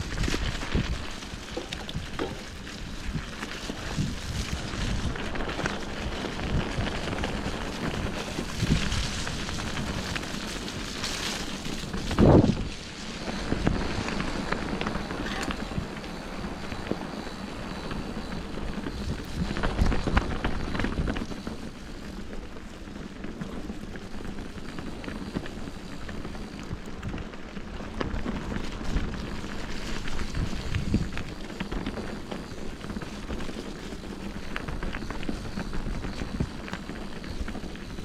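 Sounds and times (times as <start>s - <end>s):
bike rattling and knocking: 0.0s - 16.0s
bicycle tyres rolling on trail: 0.0s - 38.0s.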